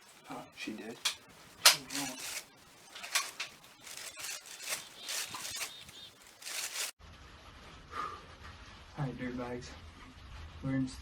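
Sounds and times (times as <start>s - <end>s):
rustling: 0.0s - 7.0s.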